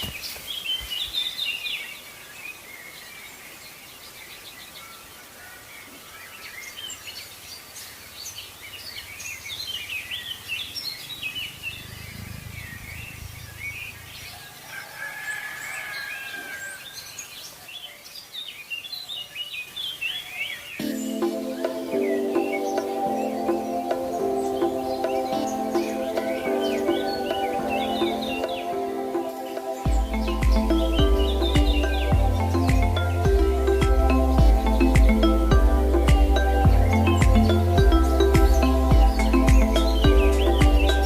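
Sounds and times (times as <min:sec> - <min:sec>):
steady background hiss: 0:00.0 - 0:14.8, 0:16.9 - 0:41.0
birds chirping and calling: 0:08.7 - 0:41.0
low rumble: 0:11.6 - 0:14.4.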